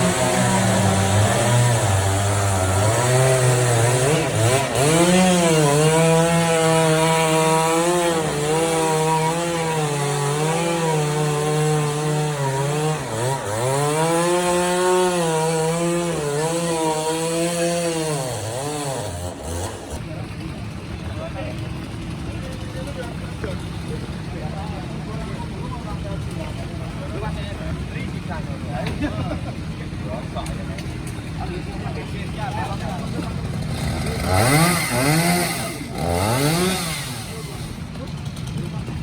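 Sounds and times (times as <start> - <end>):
chainsaw cutting wood: 0.0 - 20.0, 32.1 - 39.0.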